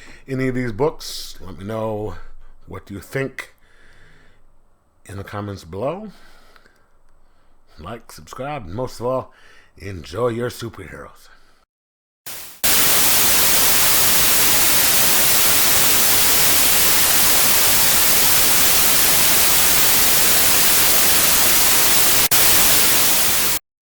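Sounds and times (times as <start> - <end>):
static hiss: 12.3 - 23.6.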